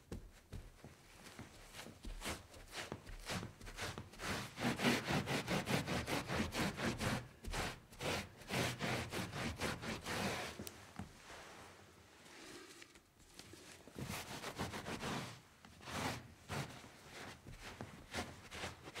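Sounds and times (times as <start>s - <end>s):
wiping strokes on a surface: 1.2s - 19.0s.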